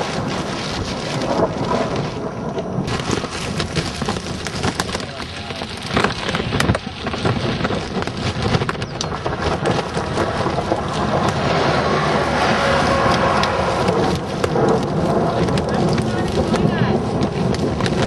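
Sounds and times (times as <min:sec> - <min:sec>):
heavy rain pelting a surface: 0:00.0 - 0:18.0.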